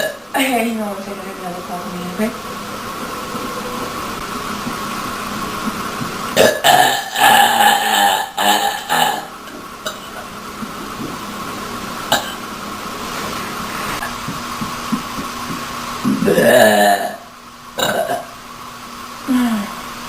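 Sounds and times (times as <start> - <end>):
woman belching: 6.4 - 9.3, 12.1 - 12.4, 16.0 - 18.3.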